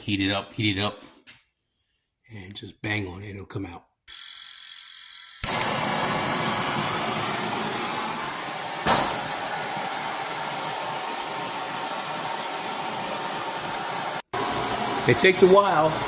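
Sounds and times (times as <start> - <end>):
blow torch flame hissing: 5.4 - 16.0.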